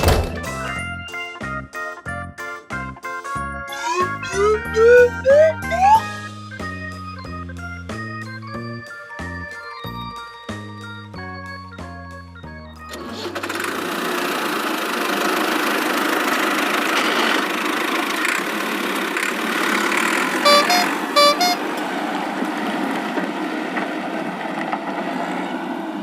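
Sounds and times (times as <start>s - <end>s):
horn honking: 3.7s - 6.2s, 20.3s - 21.7s
vehicle engine running: 11.9s - 24.7s.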